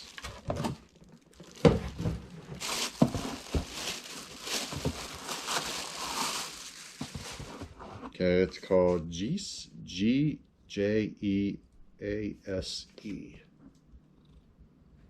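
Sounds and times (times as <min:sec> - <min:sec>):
packaging rustling and crinkling: 0:00.0 - 0:07.8.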